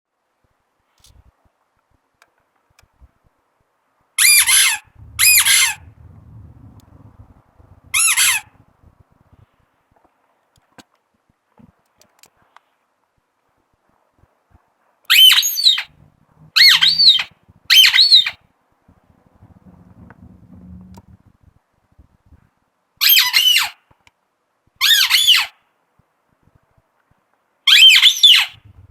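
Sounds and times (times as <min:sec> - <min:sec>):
rubber dog toy squeaking: 0:04.2 - 0:08.7, 0:15.1 - 0:18.4, 0:23.0 - 0:23.8, 0:24.8 - 0:25.6, 0:27.7 - 0:28.9.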